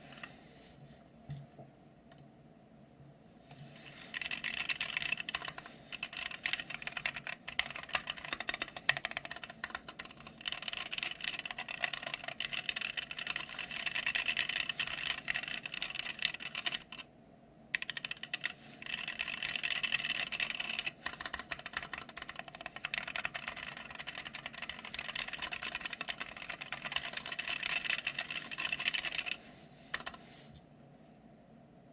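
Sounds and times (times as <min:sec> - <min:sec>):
typing on mechanical keyboard: 0:04.1 - 0:17.1, 0:17.8 - 0:30.2.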